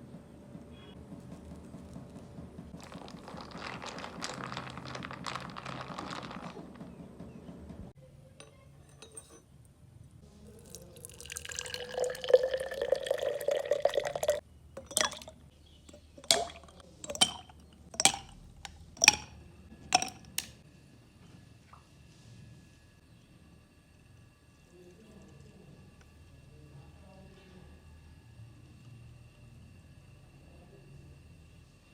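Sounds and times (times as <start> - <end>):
coffee pouring into cup: 2.8 - 6.8, 10.5 - 19.3, 19.9 - 20.5.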